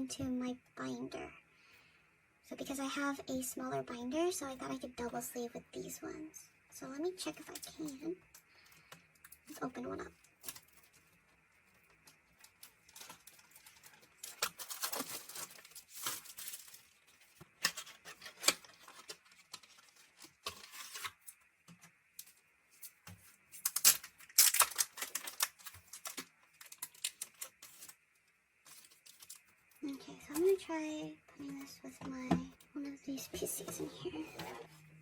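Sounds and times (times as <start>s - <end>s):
plastic sleeves crinkling and tearing: 7.3s - 21.4s, 22.2s - 30.6s.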